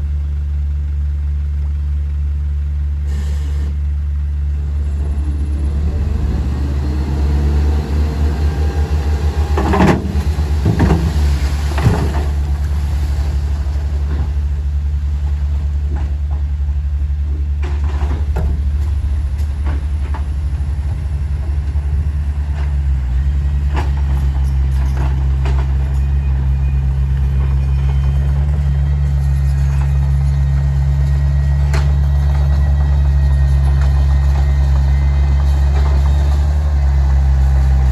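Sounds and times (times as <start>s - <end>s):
diesel machinery droning: 0.0s - 37.9s
metallic clanks and squeaks: 15.4s - 37.9s.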